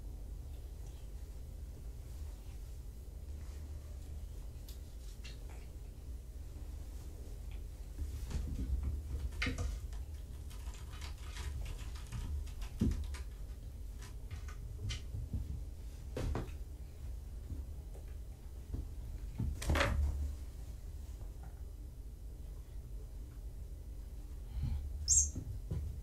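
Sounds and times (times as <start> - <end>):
low steady hum: 0.0 - 26.0
kittens knocking and rustling: 7.5 - 16.6, 17.4 - 20.4, 24.6 - 26.0.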